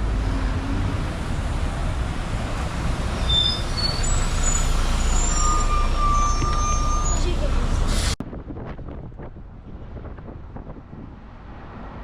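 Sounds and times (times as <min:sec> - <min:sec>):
bus engine rumble: 0:00.0 - 0:12.0
short high squeals: 0:03.2 - 0:07.4.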